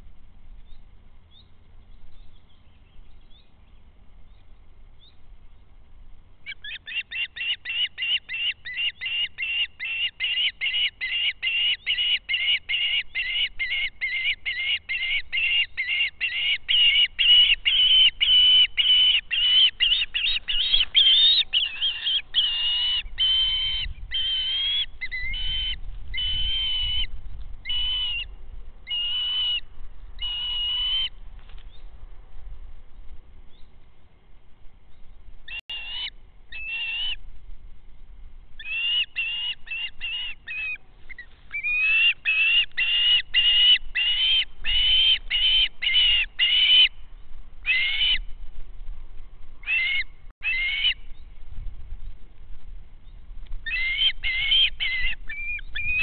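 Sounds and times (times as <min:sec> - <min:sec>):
bird whistled calls: 0:06.5 - 0:31.1, 0:35.5 - 0:37.2, 0:38.6 - 0:47.0, 0:47.6 - 0:48.2, 0:49.6 - 0:51.2, 0:53.6 - 0:56.0.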